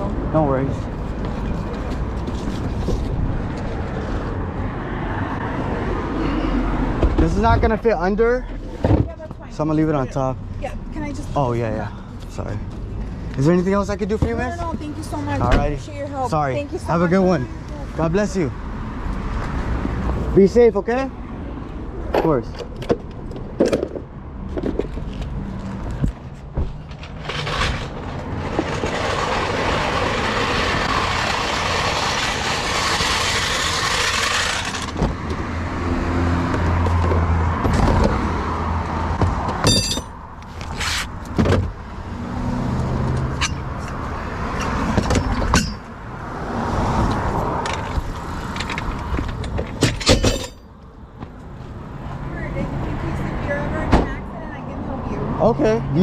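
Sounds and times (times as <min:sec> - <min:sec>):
passing vehicle noise: 0:00.0 - 0:56.0.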